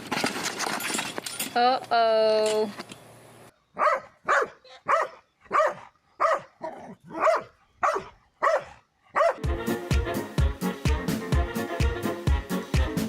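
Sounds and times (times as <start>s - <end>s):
dog barking: 3.8s - 9.4s
music with steady beat: 9.4s - 13.0s.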